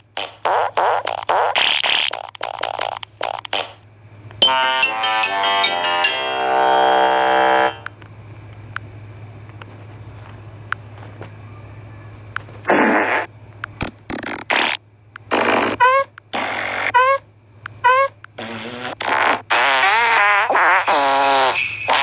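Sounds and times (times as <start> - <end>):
farts: 0.2 - 3.8, 12.6 - 16.9, 18.4 - 22.0
rising squeaks: 4.4 - 7.9, 15.3 - 22.0.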